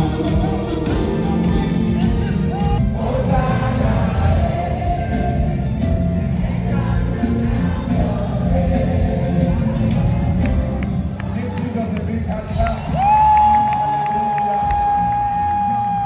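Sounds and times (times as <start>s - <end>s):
choir singing gospel: 0.0s - 11.9s
band playing: 0.0s - 16.0s.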